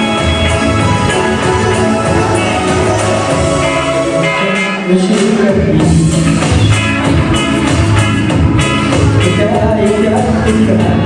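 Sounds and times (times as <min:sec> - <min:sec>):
pop-rock music with guitar: 0:00.0 - 0:11.0.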